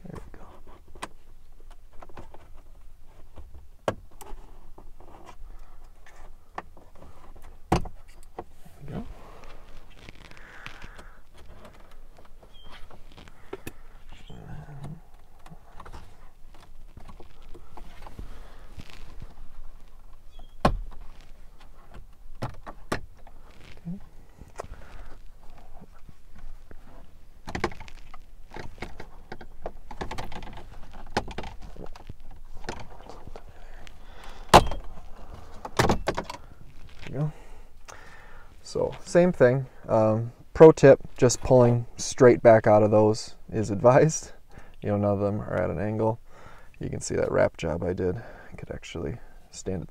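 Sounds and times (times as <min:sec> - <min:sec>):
rustling: 0:00.1 - 0:43.1.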